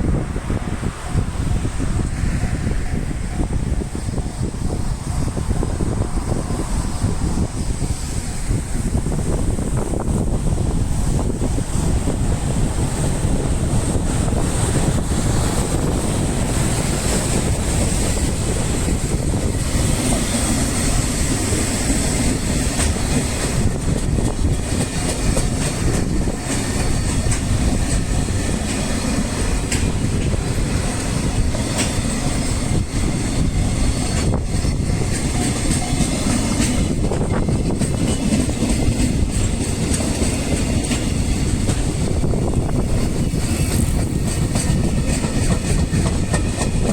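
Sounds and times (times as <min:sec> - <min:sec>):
freight train passing: 0:00.0 - 0:46.9
wheels clattering on rail: 0:00.0 - 0:46.9.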